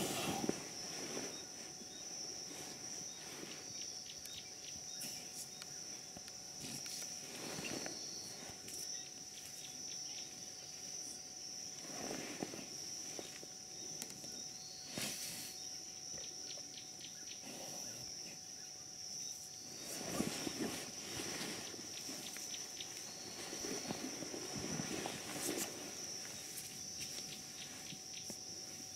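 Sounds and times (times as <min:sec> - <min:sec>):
high-pitched insect drone: 0:00.0 - 0:28.9
animal rustling in sawdust: 0:06.6 - 0:09.7, 0:19.7 - 0:28.9.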